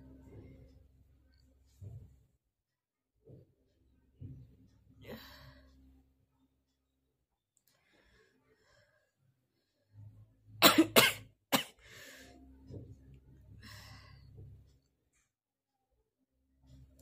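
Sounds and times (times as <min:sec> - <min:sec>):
person breathing: 0:07.7 - 0:09.9, 0:11.8 - 0:12.4, 0:13.4 - 0:14.7
person coughing harshly: 0:10.6 - 0:11.8.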